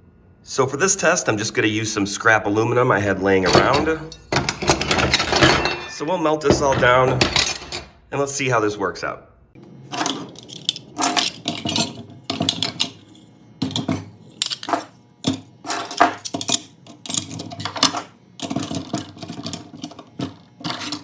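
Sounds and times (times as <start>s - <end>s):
scrap aluminum clattering on metal: 3.4s - 8.0s.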